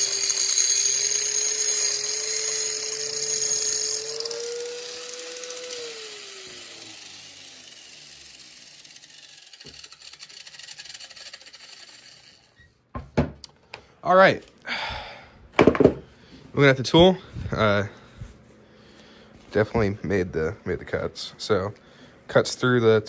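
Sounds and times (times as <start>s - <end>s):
angle grinder running: 0.0s - 12.6s.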